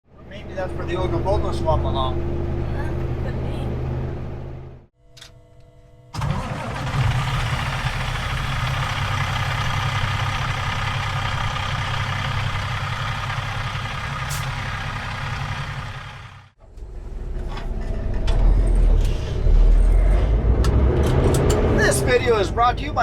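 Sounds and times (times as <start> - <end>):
road and wind noise: 0.1 - 4.9, 6.2 - 23.0
diesel truck engine running: 6.2 - 17.5.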